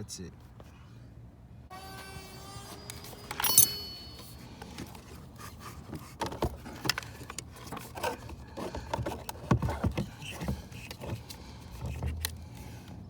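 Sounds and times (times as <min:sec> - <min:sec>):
ringing metal clink: 0:03.2 - 0:04.7.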